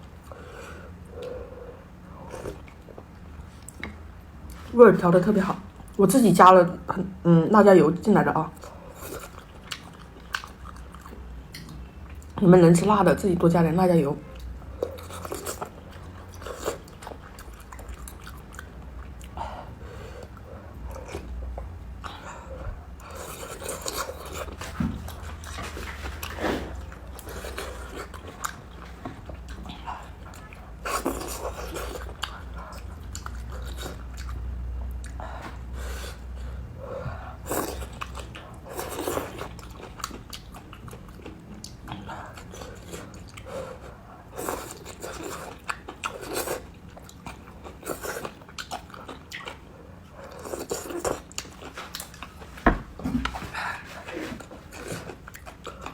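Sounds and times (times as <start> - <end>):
steady low hum: 0.0 - 55.9
chewing and biting noodles: 37.4 - 52.4.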